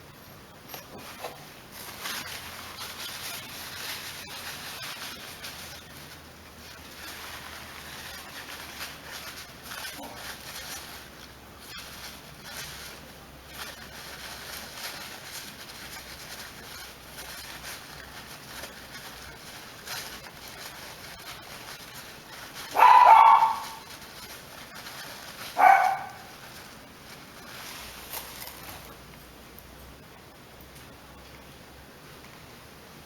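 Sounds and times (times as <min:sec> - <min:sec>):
handling and rustling noise: 0:00.2 - 0:30.0
dog barking: 0:22.7 - 0:23.8, 0:25.6 - 0:26.3.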